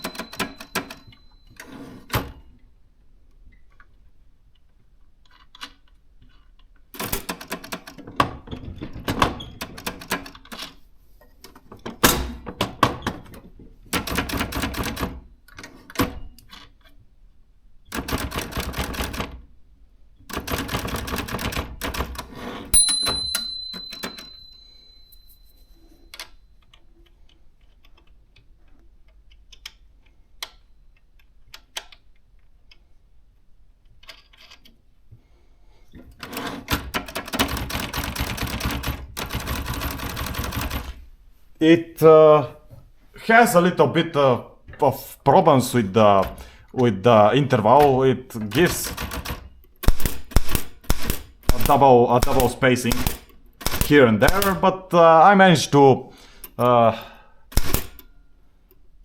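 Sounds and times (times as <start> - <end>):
manual typewriter keystrokes: 0.0 - 1.2, 7.0 - 8.1, 9.6 - 10.7, 13.9 - 15.2, 17.9 - 19.4, 20.3 - 22.3, 36.2 - 41.0, 48.5 - 54.7
typewriter bell ringing: 0.0 - 1.9, 22.8 - 26.4.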